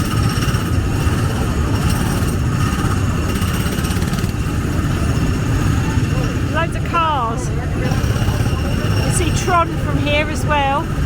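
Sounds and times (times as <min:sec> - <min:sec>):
small petrol engines droning: 0:00.0 - 0:11.0.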